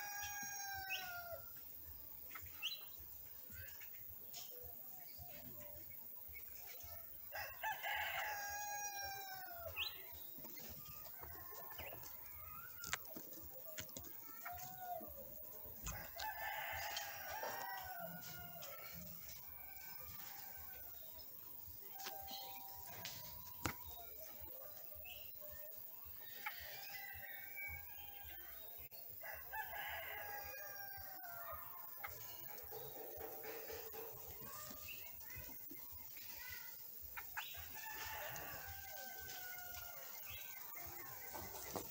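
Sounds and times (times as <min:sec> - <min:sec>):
rooster crowing: 0:07.3 - 0:09.8, 0:15.9 - 0:18.8, 0:29.2 - 0:31.6
bird chirps: 0:21.9 - 0:24.4.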